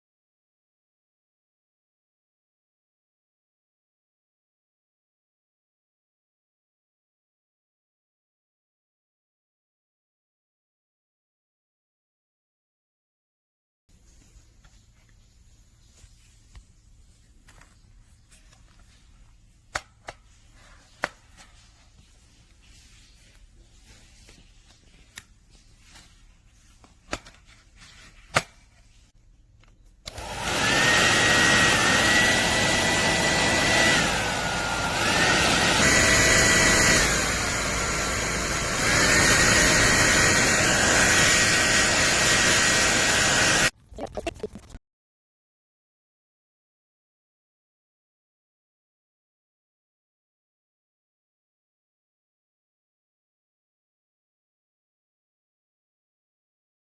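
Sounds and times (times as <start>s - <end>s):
hair dryer running: 30.1s - 43.7s.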